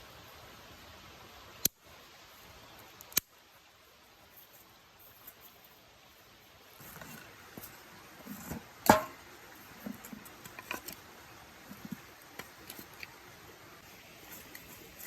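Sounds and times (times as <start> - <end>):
handling clicks and rustles: 6.7 - 15.0.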